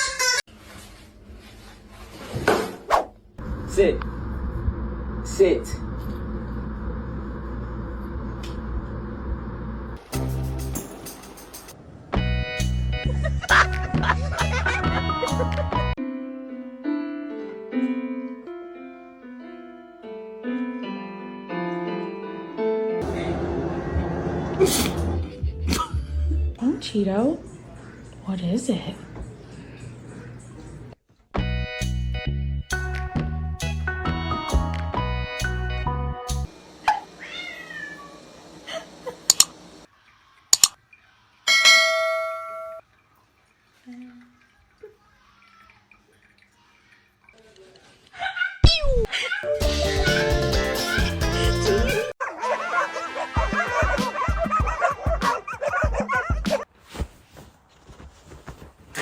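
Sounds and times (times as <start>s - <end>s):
slow piano melody: 14.9s - 23.1s, 33.2s - 36.5s
cat meowing: 36.9s - 38.2s
bell-like ding: 41.5s - 42.8s.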